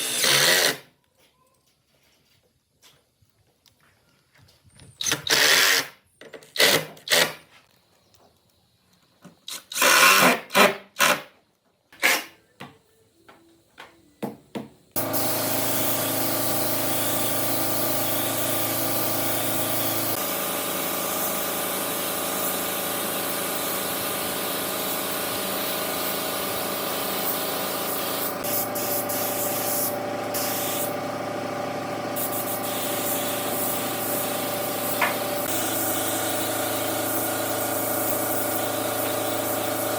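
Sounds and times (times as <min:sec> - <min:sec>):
hissing spray bursts: 0:15.0 - 0:31.0, 0:32.1 - 0:39.9
machine humming and hissing: 0:15.0 - 0:39.9.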